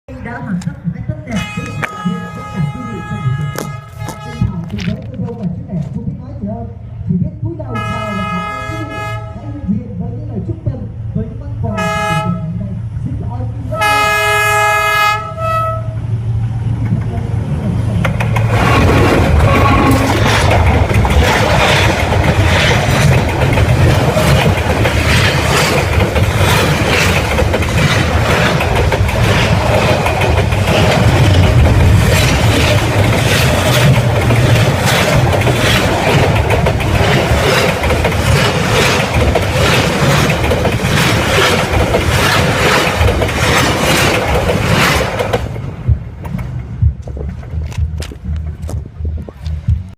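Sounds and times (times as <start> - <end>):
train rumble: 0.1 - 49.9
train wheels clattering on rails: 16.8 - 47.6.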